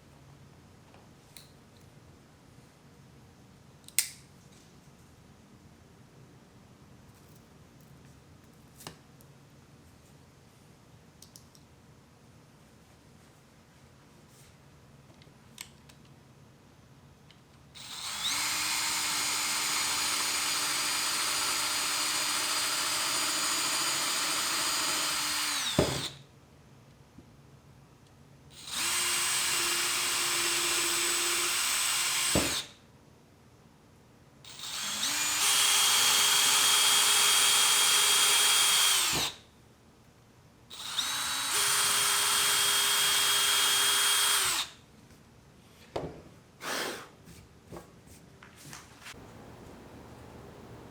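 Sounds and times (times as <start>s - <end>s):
electric drill whining: 17.8s - 26.2s, 28.6s - 32.7s, 34.5s - 39.4s, 40.7s - 44.8s.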